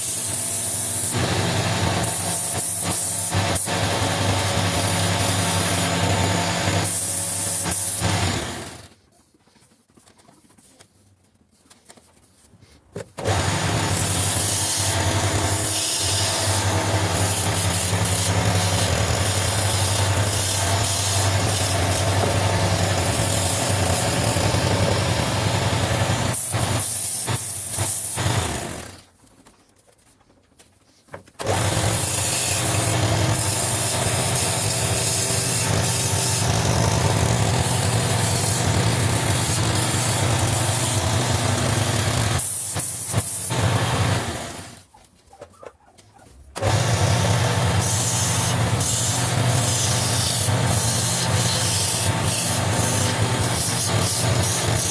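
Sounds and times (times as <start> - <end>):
wood lathe motor hum: 0.0 - 8.9, 13.2 - 29.0, 31.4 - 44.8, 46.6 - 54.9
chisel scraping spinning wood: 0.2 - 8.9, 13.2 - 27.3, 31.4 - 42.5, 46.6 - 54.9.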